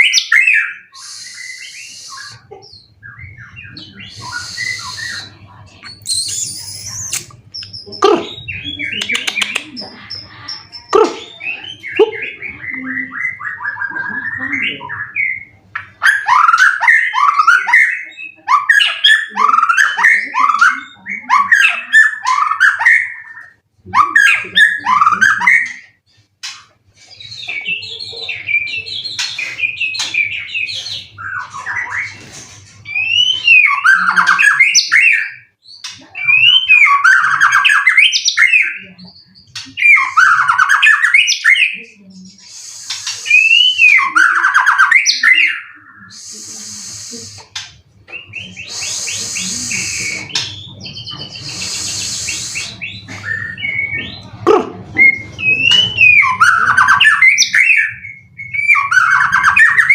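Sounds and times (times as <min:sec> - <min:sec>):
songbird singing whistles: 0:00.0 - 0:09.6, 0:32.8 - 0:41.8, 0:42.4 - 0:54.4, 0:55.0 - 0:59.9.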